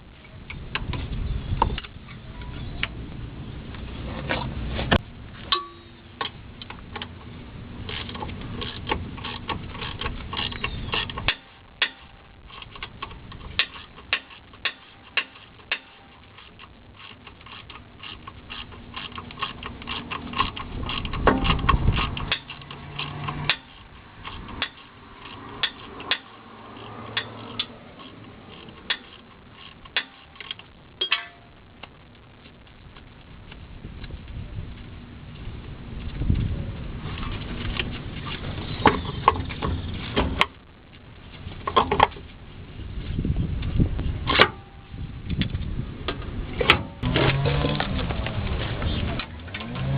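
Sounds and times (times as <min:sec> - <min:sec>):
ratchet wrench clicking: 0:07.9 - 0:30.7
low rumble: 0:19.7 - 0:49.9.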